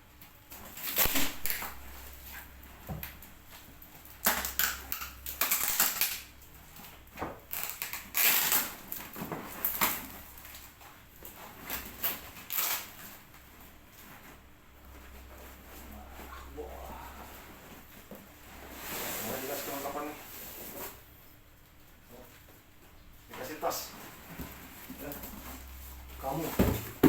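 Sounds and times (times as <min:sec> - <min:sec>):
packaging being cut and torn: 0:00.8 - 0:01.7, 0:04.2 - 0:06.3, 0:07.5 - 0:10.0.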